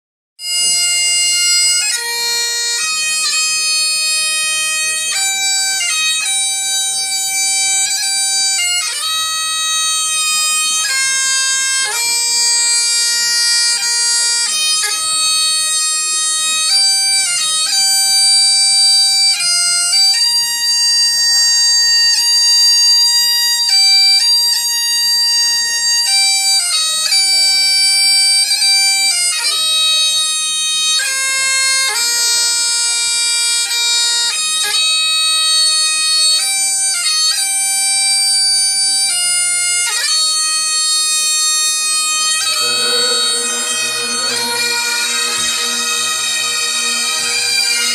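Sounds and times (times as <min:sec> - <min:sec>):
bagpipes playing: 0:00.4 - 0:47.9.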